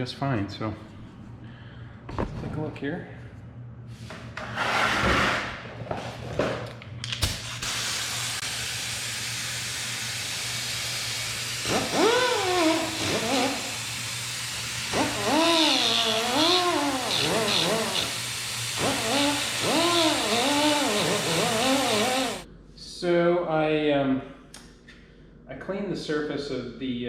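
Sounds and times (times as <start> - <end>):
hissing: 7.6 - 22.4.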